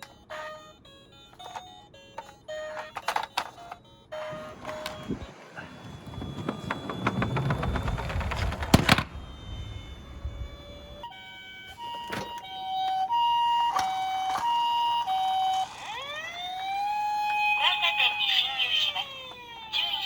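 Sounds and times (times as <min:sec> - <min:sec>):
toy car rattling: 0:00.0 - 0:10.7
two-tone electronic siren: 0:00.0 - 0:20.0
electronic siren rising wail: 0:04.0 - 0:20.0.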